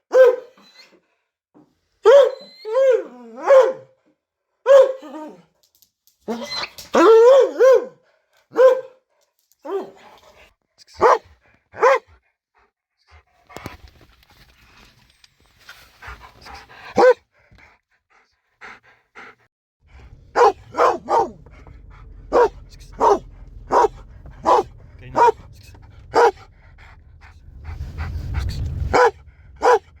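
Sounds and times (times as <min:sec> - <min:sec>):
dog barking deeply: 0:00.1 - 0:00.5, 0:03.4 - 0:03.9, 0:04.7 - 0:05.1, 0:07.0 - 0:09.0, 0:11.0 - 0:12.1, 0:17.0 - 0:17.2, 0:19.9 - 0:30.0
dog growling: 0:19.9 - 0:30.0.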